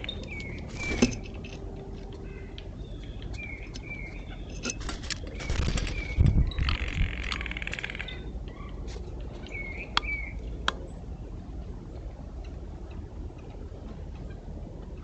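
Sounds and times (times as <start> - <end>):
low background rumble: 0.0 - 15.0
sharp clicks: 4.6 - 8.2.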